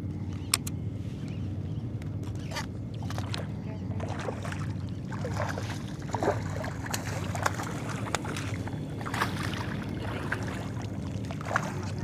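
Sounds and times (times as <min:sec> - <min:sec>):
boat motor humming: 0:00.0 - 0:12.0
water splashes: 0:02.9 - 0:12.0.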